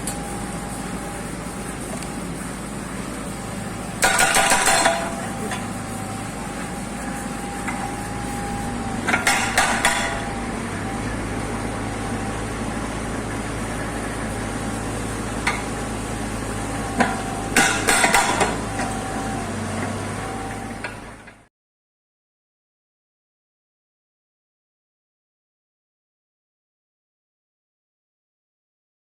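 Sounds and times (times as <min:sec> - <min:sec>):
diesel engine with hydraulic whine: 0:00.0 - 0:21.5
hydraulic breaker hammering: 0:03.8 - 0:21.4
metal clanks: 0:04.0 - 0:05.8, 0:09.0 - 0:10.4, 0:17.0 - 0:18.9.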